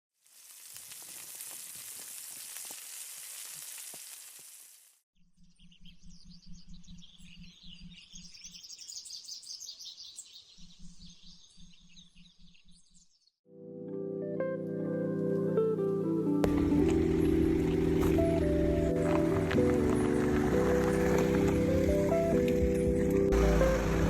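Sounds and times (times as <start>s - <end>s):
meat sizzling on a grill: 0.2s - 5.0s
birds chirping: 5.4s - 13.3s, 16.5s - 24.0s.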